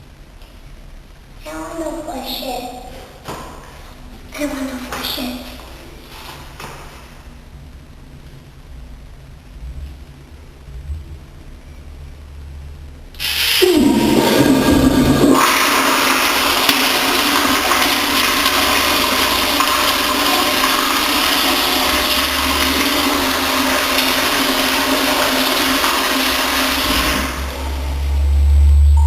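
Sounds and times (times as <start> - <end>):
low rumble: 8.8 - 17.1, 26.9 - 29.0
toilet flushing: 13.2 - 29.0.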